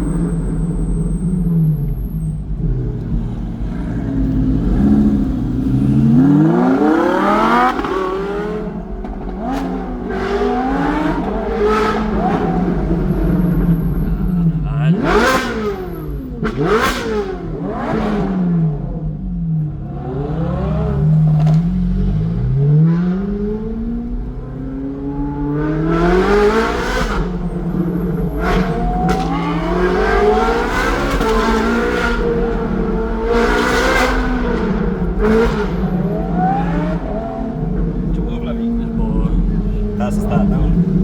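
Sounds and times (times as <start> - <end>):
car engine revving hard: 1.4 - 19.0, 19.8 - 41.0
exhaust cracks: 26.4 - 41.0.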